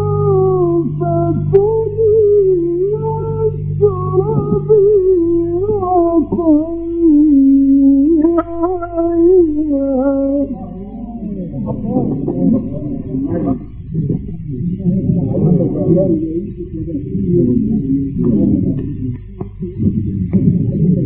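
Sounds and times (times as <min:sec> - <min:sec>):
low electrical hum: 0:00.0 - 0:21.0
man chanting recitation: 0:00.0 - 0:21.0.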